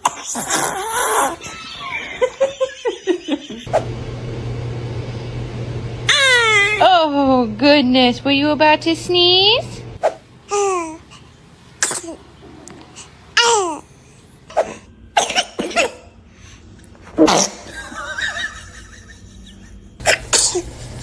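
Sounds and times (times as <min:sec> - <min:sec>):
laughter: 0:01.4 - 0:03.7, 0:17.6 - 0:20.0
baby sneezing: 0:10.0 - 0:11.0, 0:11.8 - 0:12.2, 0:13.0 - 0:13.9, 0:14.5 - 0:16.0.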